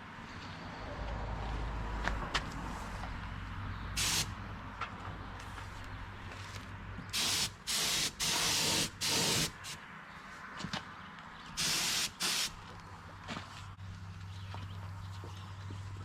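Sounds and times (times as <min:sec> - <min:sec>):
spray gun hissing bursts: 0:04.0 - 0:04.3, 0:07.2 - 0:09.8, 0:11.6 - 0:12.5.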